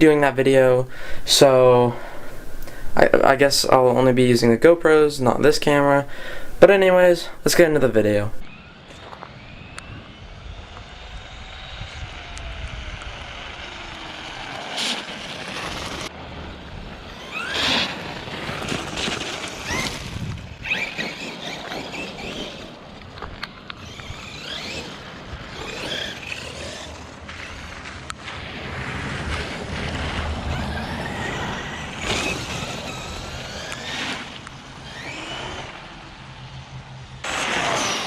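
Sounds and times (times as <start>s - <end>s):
steady rushing noise: 0.0s - 38.0s
electric motor whining: 8.4s - 16.1s, 17.0s - 28.2s, 29.7s - 36.2s.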